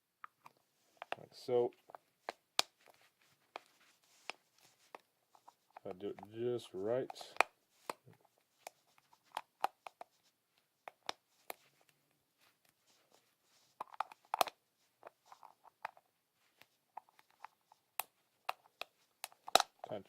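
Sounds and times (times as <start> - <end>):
plastic parts clicking and scraping: 13.7 - 20.0.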